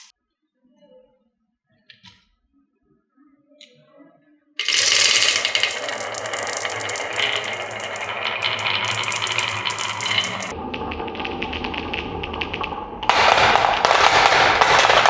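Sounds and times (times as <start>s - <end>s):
marbles rattling down wooden tracks: 4.6s - 15.0s.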